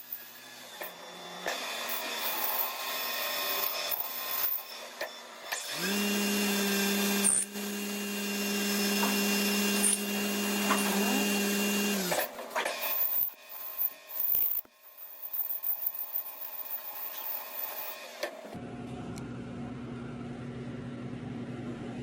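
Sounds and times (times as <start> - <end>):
lathe scraping cutting noise: 0.0 - 18.6.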